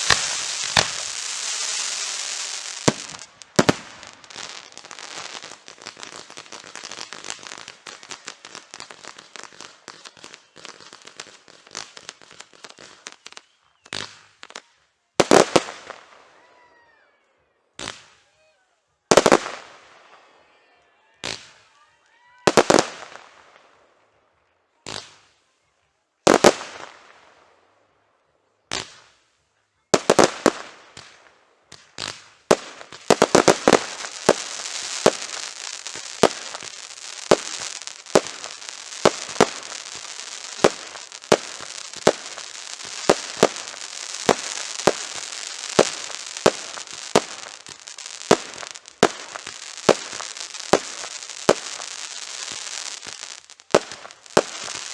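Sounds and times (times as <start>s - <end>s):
firework shell bursts: 0.0s - 1.2s
dense firework crackling: 0.0s - 16.4s, 26.2s - 27.6s, 29.9s - 54.9s.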